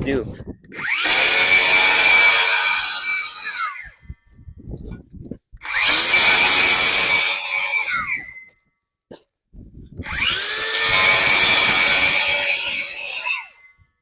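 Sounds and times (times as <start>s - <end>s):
power saw cutting roof: 0.7s - 4.0s, 5.6s - 8.5s, 10.0s - 13.7s.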